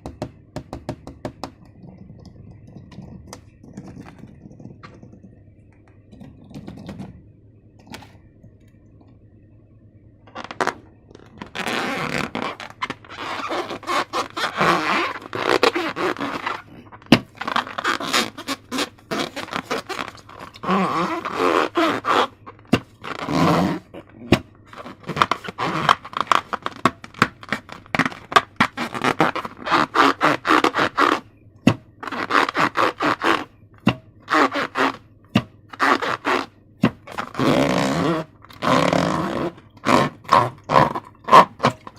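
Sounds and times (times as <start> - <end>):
crackling slime scraping: 10.3 - 31.3, 32.0 - 33.6, 34.3 - 35.0, 35.7 - 41.9.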